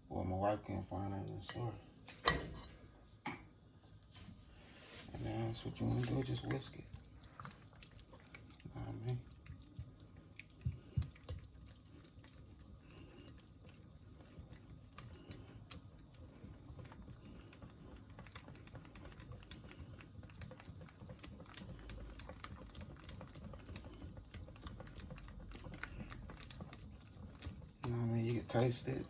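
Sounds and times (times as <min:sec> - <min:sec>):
whisk clicking against a bowl: 0:08.7 - 0:29.0.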